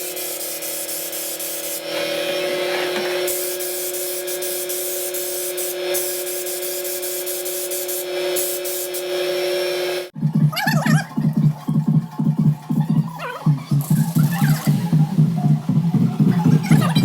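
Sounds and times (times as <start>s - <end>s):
spraying hiss: 0.0s - 2.1s, 3.2s - 9.1s
two-tone hum: 9.9s - 17.0s
music with pulsing bass beat: 10.2s - 17.0s.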